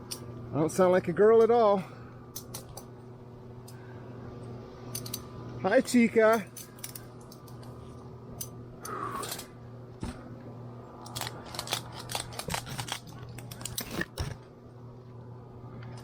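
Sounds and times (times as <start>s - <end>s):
steady low hum: 0.0s - 16.0s
sharp clicks and crackles: 11.0s - 14.4s.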